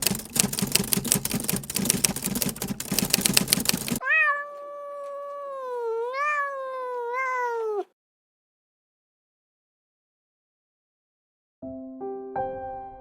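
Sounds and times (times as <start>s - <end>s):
rapid clicking and crackling: 0.0s - 4.0s
cat meowing: 4.0s - 8.0s.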